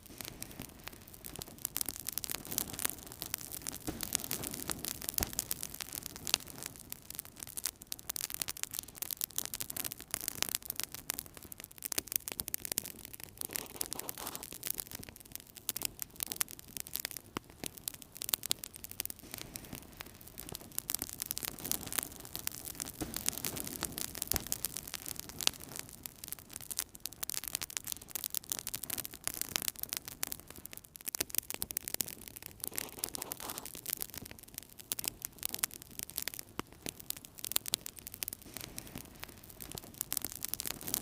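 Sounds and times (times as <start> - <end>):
soft rush of flame: 0.0 - 7.6, 12.8 - 14.9, 17.7 - 26.8, 31.4 - 41.0
fire crackling and popping: 0.0 - 41.0.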